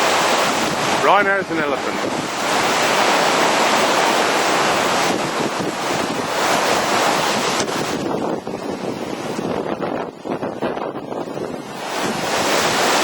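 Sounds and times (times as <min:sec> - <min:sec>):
torrential rain pouring: 0:00.0 - 0:09.0.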